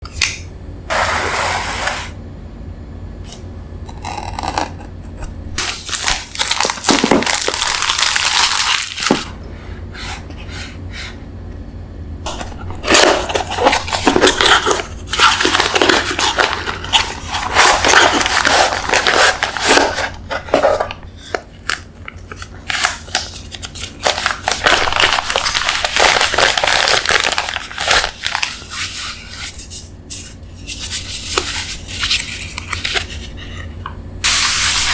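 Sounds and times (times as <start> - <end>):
steady low hum: 0.0 - 34.9
plastic and paper crinkling and tearing: 5.6 - 9.3, 12.8 - 33.4.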